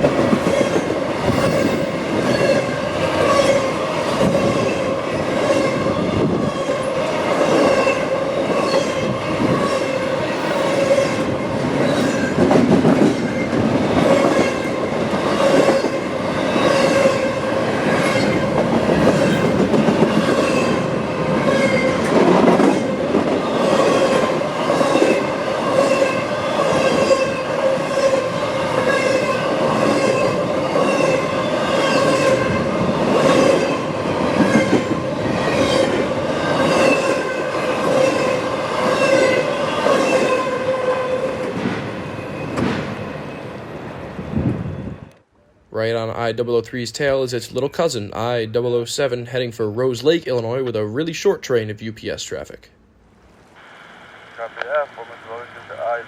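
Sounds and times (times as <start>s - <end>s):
wheels squealing on rail: 0.0s - 12.4s.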